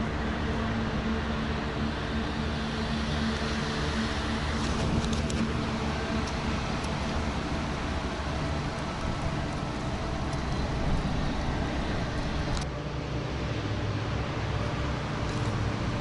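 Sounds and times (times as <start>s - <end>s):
gusty wind buffeting microphone: 0.0s - 16.0s.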